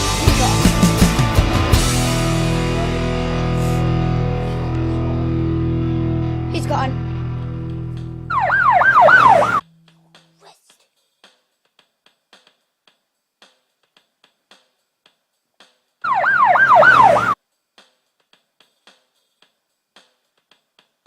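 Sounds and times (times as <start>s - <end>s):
siren yelping: 8.3s - 9.6s, 16.1s - 17.4s.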